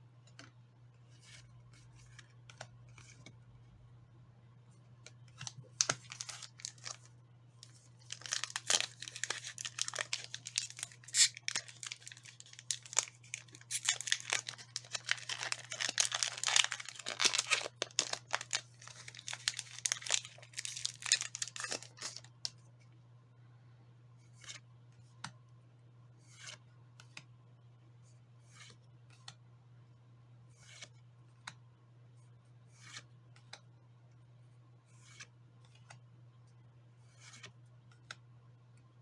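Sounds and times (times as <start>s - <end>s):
foil wrapper crinkling and tearing: 5.8s - 22.5s.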